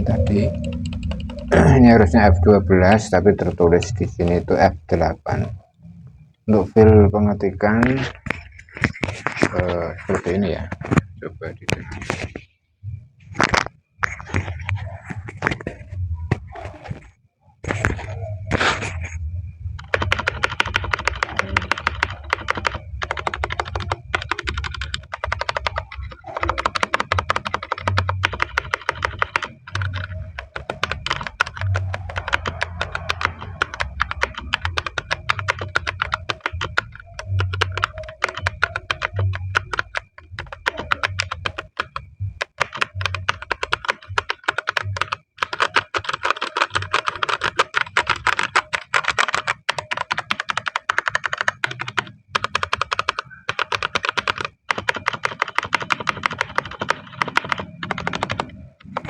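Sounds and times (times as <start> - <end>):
mechanical keyboard typing: 0.0 - 5.6, 19.8 - 59.0.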